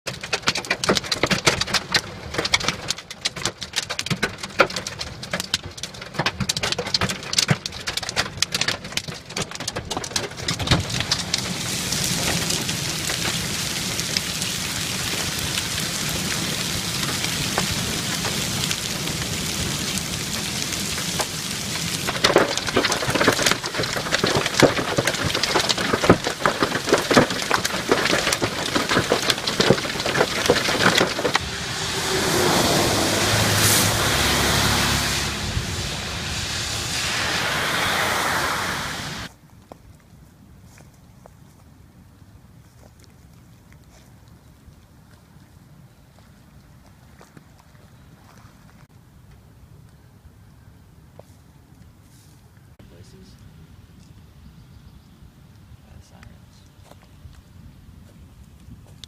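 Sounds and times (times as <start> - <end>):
hailstones striking hard surface: 0.1 - 32.6
heavy rain downpour: 10.5 - 39.3.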